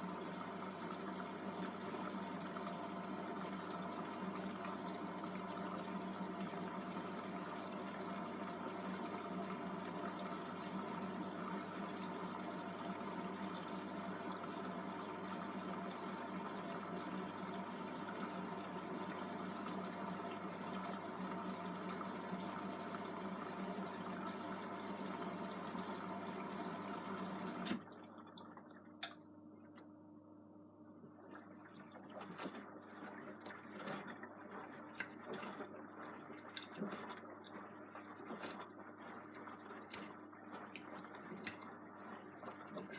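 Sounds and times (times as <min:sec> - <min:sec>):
washing machine water inlet hiss: 0:00.0 - 0:27.9.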